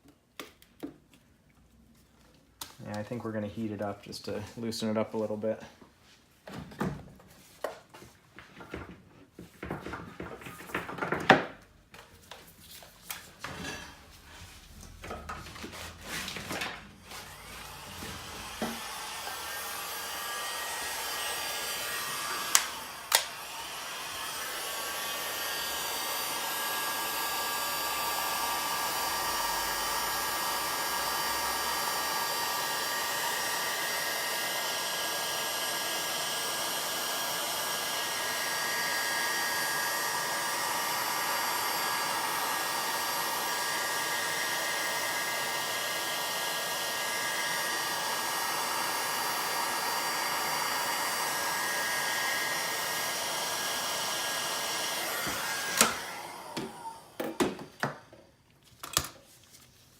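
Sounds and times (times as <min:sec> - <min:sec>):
hot-air blower running: 0:13.1 - 0:58.2.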